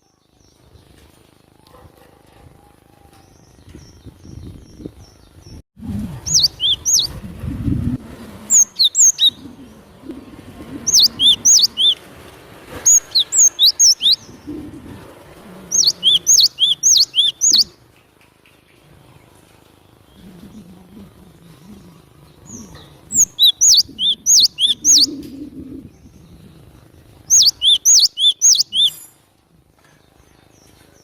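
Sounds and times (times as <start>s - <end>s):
low rumbling background noise: 0.0s - 31.0s
bird singing sharp sliding notes: 6.2s - 7.2s, 8.2s - 10.0s, 10.8s - 12.0s, 12.8s - 14.5s, 15.7s - 17.8s, 22.4s - 25.3s, 27.3s - 29.1s.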